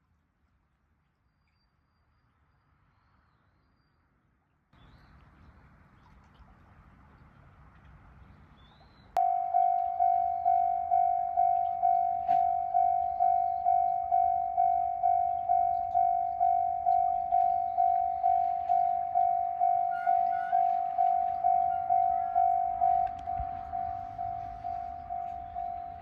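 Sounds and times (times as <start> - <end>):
level-crossing warning bell: 9.2 - 26.0.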